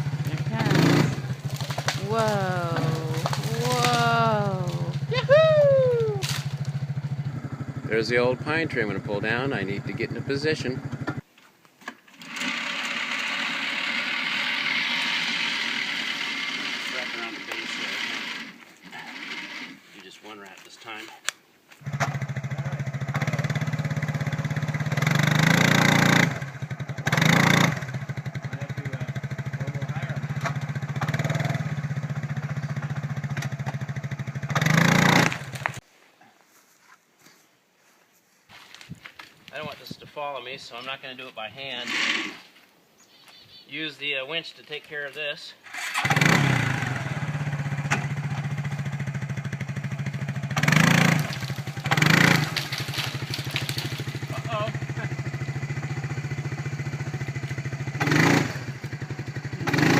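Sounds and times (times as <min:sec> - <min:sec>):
atv engine idling and revving: 0:00.0 - 0:11.3, 0:12.6 - 0:19.8, 0:21.8 - 0:35.8, 0:45.6 - 0:59.9.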